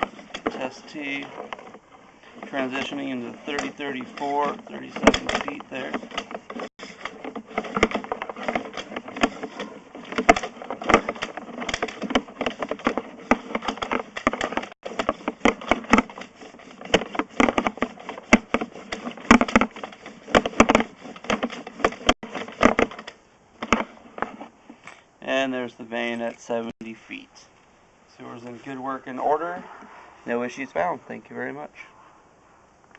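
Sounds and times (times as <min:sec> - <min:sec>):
camera head knocking in pipe: 0:01.4 - 0:24.0.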